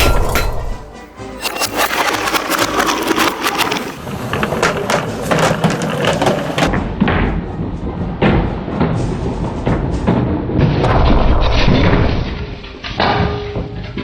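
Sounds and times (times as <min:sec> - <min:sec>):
toy cars clattering along a track: 0:01.4 - 0:06.7.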